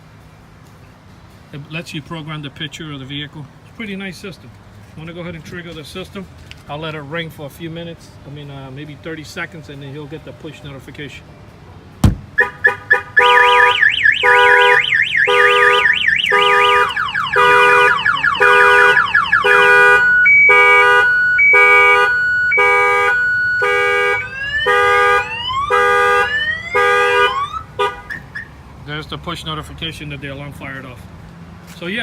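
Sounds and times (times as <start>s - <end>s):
car alarm chirps: 12.0s - 28.6s
car alarm siren: 12.3s - 28.6s.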